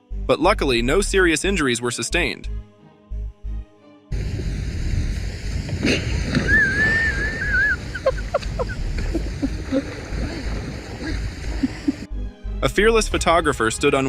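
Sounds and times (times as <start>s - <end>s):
wind rumbling on microphone: 4.1s - 12.1s
splash into water: 5.7s - 8.0s.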